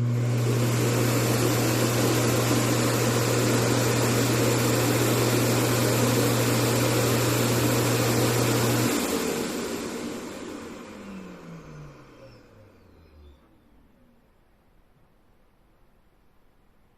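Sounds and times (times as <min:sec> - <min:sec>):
suction motor running: 0:00.0 - 0:13.6.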